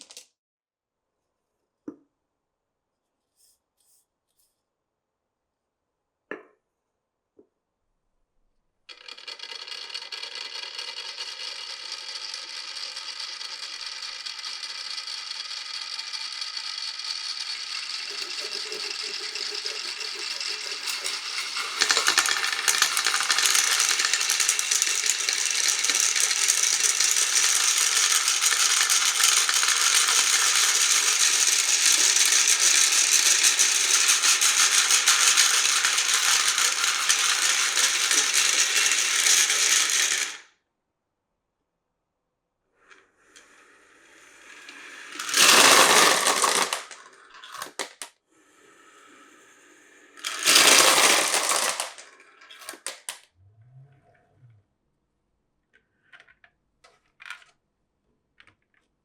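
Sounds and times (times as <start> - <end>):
marbles rattling down tracks: 8.9 - 40.5, 43.3 - 48.1, 50.1 - 53.2.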